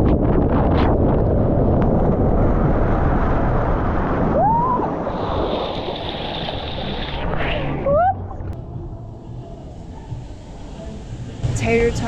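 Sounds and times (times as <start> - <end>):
wind buffeting microphone: 0.0 - 8.5
rushing water: 5.0 - 7.9.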